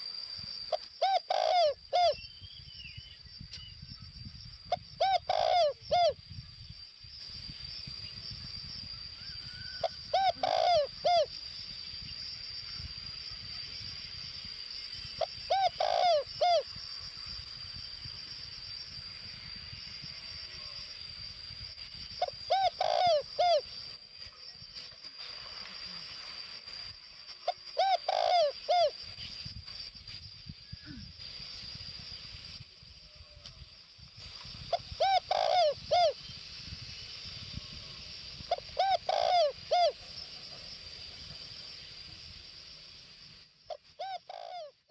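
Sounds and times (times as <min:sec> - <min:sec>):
dove cooing: 0:00.7 - 0:02.2, 0:05.0 - 0:06.2, 0:09.8 - 0:11.3, 0:15.2 - 0:16.6, 0:22.2 - 0:23.7, 0:27.5 - 0:29.0, 0:34.7 - 0:36.2, 0:38.5 - 0:40.0, 0:43.7 - 0:44.8.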